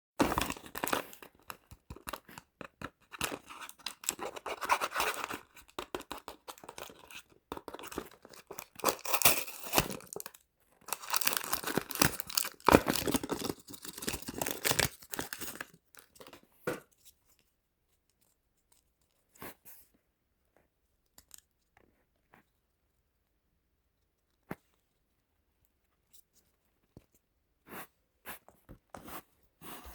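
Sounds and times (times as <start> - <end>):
packaging torn and crinkled: 3.0 - 16.3.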